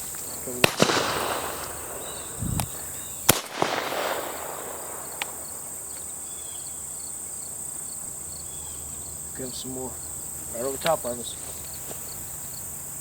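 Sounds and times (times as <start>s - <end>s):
high insect buzz: 0.0s - 13.0s
shotgun shots with echo: 0.5s - 5.8s.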